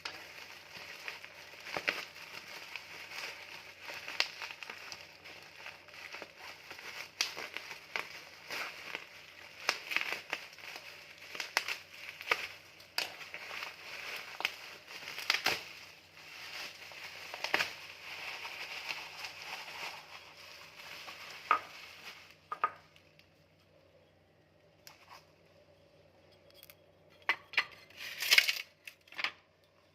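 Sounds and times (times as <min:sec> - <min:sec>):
packaging crinkling: 0:00.0 - 0:23.4, 0:27.9 - 0:29.0
sharp crackles and clicks: 0:00.0 - 0:23.4, 0:26.4 - 0:29.8.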